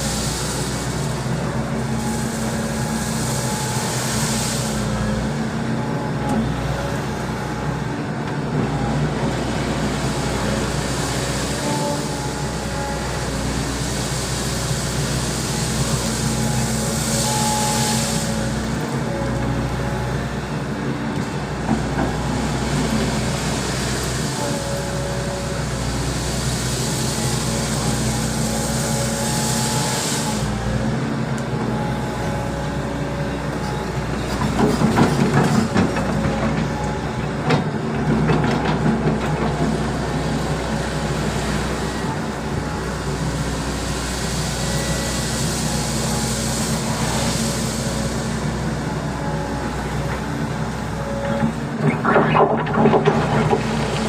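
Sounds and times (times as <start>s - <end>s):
excavator running: 0.0s - 54.0s.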